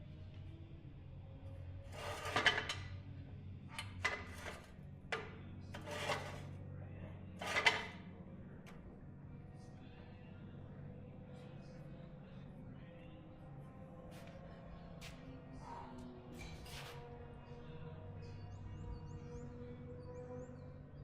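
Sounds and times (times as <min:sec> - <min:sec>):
plastic parts scraping and clicking: 0:07.4 - 0:08.0.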